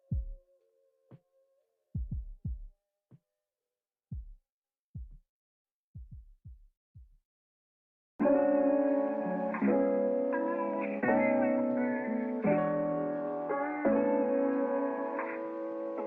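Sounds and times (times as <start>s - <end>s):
plucked guitar music: 8.2s - 16.0s.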